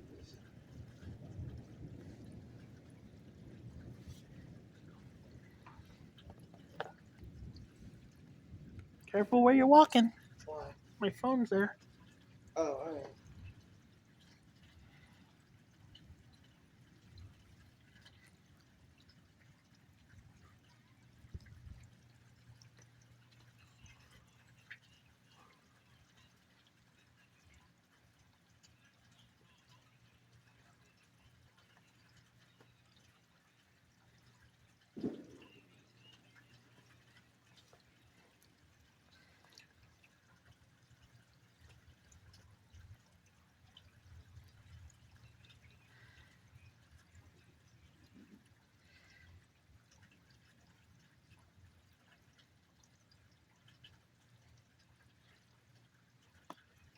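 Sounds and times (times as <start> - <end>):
faint low rumble: 0.0 - 9.1
faint drips and ticks: 0.0 - 56.9
low hum: 35.0 - 37.1.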